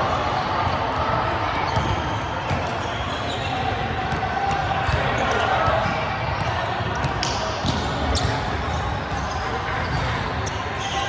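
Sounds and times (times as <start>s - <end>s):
players chattering: 0.0s - 11.0s
balls bouncing on gym floor: 4.1s - 8.5s.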